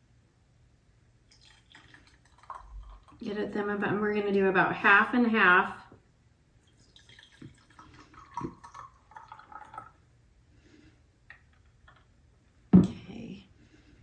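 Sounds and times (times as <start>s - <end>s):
liquid trickling and dripping: 1.2s - 3.4s, 6.6s - 10.0s.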